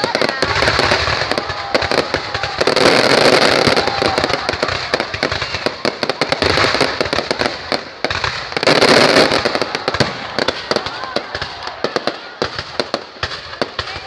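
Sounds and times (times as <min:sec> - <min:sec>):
fireworks cracking and banging: 0:00.0 - 0:14.0.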